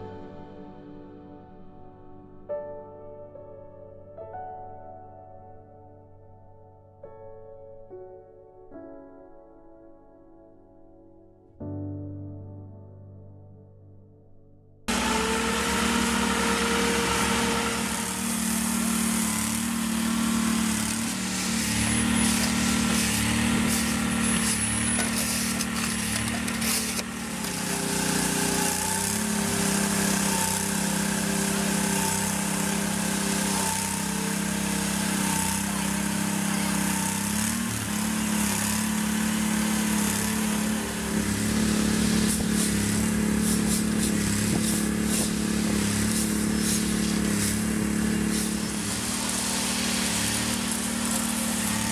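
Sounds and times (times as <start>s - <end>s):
engine running: 14.9s - 51.9s.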